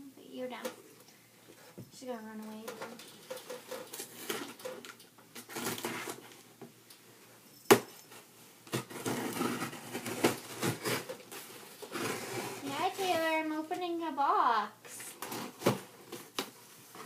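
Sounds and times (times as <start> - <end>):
cardboard box rustling and scraping: 8.8 - 13.2.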